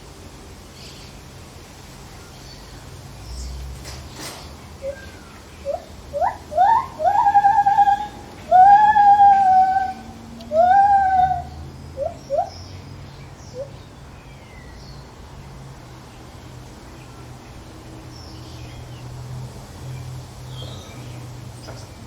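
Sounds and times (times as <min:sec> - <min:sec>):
gibbon whooping and hooting: 0:04.8 - 0:12.5.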